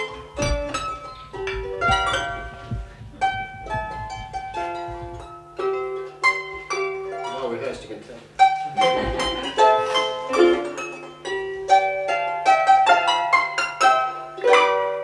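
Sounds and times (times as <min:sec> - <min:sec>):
low thuds: 0:00.0 - 0:05.9
harp being plucked: 0:00.0 - 0:07.7, 0:08.4 - 0:15.0.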